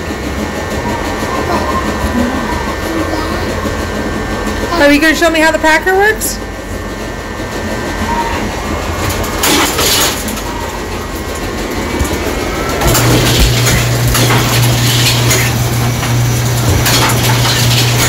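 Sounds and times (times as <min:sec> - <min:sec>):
steady low hum: 0:00.0 - 0:18.0
packing machine rattling: 0:07.5 - 0:18.0.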